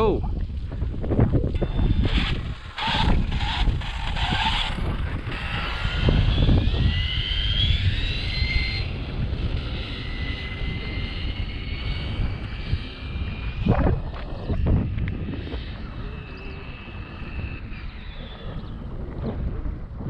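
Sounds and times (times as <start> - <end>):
wind rumble on microphone: 0.0 - 20.0
rc car motor whine: 1.4 - 20.0.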